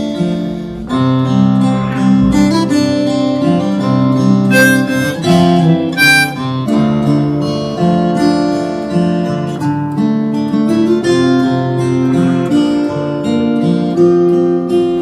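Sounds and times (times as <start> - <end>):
acoustic guitar backing: 0.0 - 15.0
harmonica melody: 1.6 - 7.4.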